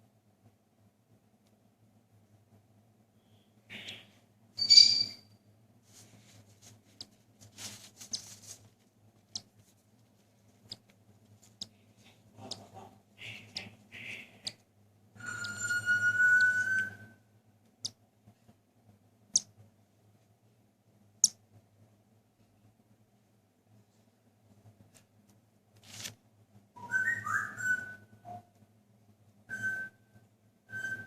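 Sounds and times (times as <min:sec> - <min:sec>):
raspy bird calls: 0:03.2 - 0:05.1, 0:12.4 - 0:14.6
chick high peeps and clicks: 0:10.6 - 0:10.9, 0:12.4 - 0:14.6, 0:15.3 - 0:15.6, 0:17.8 - 0:18.0.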